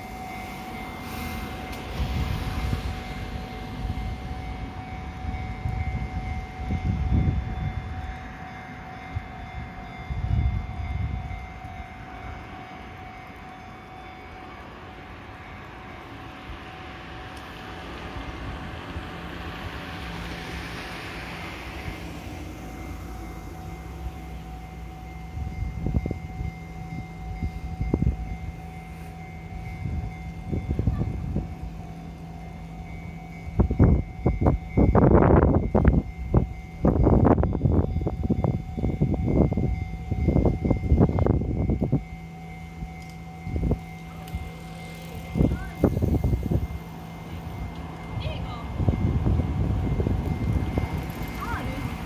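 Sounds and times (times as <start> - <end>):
steady high tone: 0.0 - 52.0
train rumbling past: 0.0 - 52.0
level crossing bell ringing: 22.6 - 52.0.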